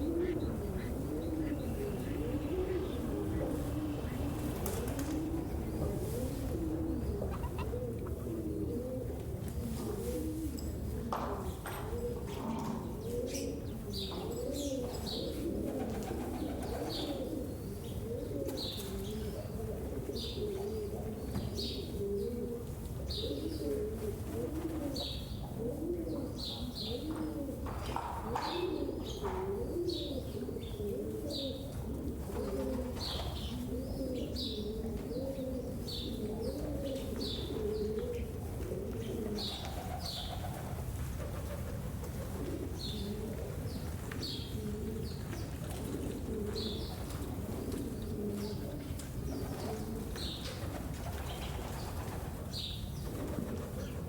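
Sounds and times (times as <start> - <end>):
pigeons cooing: 0.0 - 54.0.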